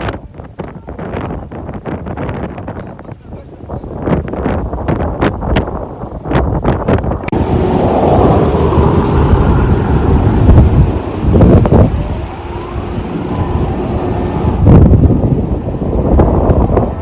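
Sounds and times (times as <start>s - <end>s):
wind buffeting microphone: 0.0s - 17.0s
outdoor rumble: 7.3s - 17.0s
steady high hiss: 7.3s - 17.0s.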